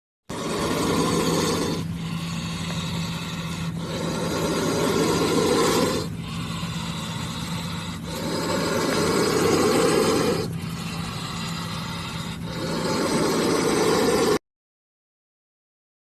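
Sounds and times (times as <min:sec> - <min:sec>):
snake hissing: 0:00.3 - 0:14.4
steady low hum: 0:00.3 - 0:14.4.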